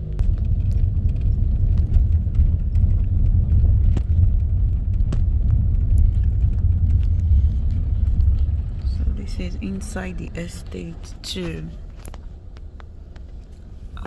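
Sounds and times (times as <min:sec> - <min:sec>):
car driving rumble: 0:00.0 - 0:14.0.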